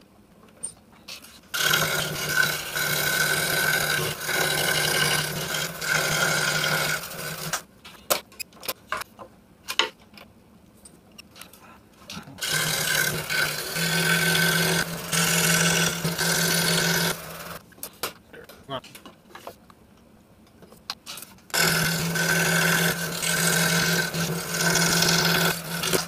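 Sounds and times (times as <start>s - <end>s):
scroll saw cutting wood: 1.5s - 7.6s, 12.4s - 17.6s, 21.5s - 26.0s.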